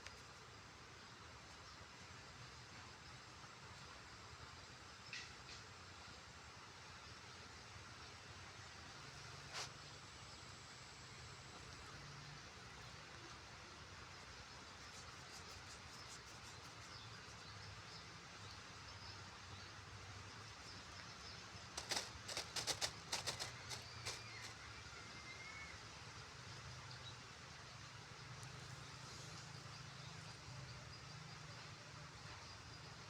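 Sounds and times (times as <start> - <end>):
outdoor background hiss: 0.0 - 33.0
rapid sharp clicks: 21.8 - 24.6.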